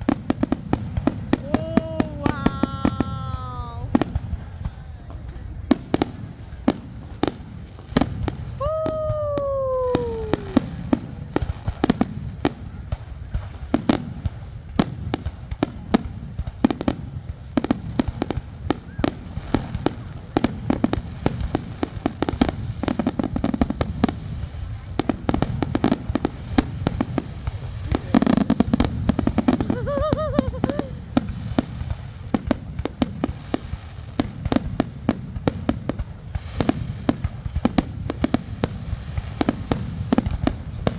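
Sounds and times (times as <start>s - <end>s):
fireworks booming and cracking: 0.0s - 40.9s
firework falling whistle: 8.6s - 10.8s, 29.6s - 31.0s.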